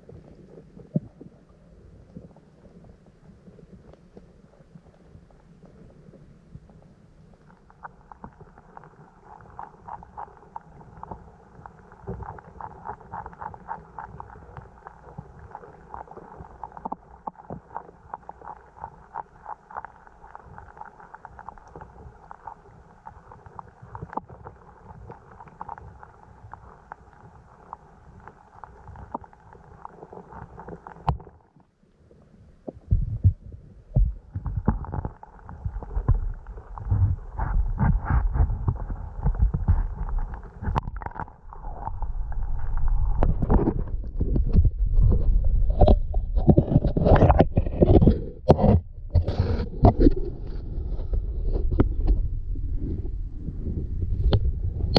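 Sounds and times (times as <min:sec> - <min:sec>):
patter of small ticks and clicks: 0:00.0 - 0:53.0
muffled stream water running: 0:00.0 - 0:54.9
low thumps and rumbles: 0:32.7 - 0:54.9.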